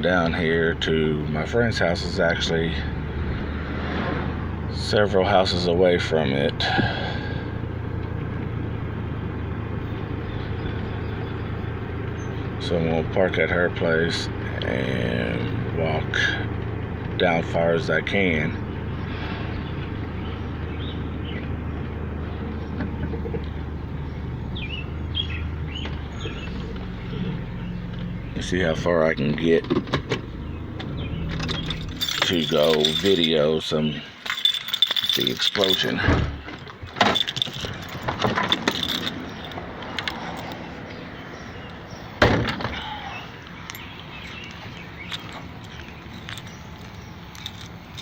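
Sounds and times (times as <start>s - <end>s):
car engine and road noise: 0.0s - 48.0s
bird chirps: 22.2s - 28.8s, 42.8s - 47.4s
keys rattling: 31.0s - 33.5s, 34.1s - 40.8s, 43.7s - 48.0s
car door slamming: 42.2s - 42.9s.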